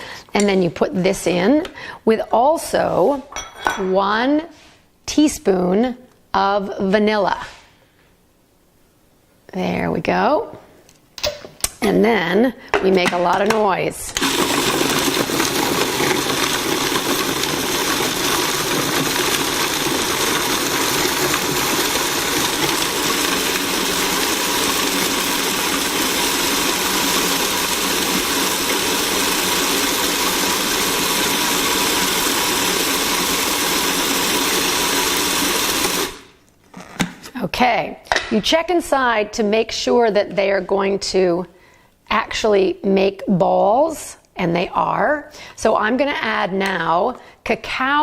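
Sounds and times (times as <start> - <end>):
food processor grinding: 14.2 - 36.4.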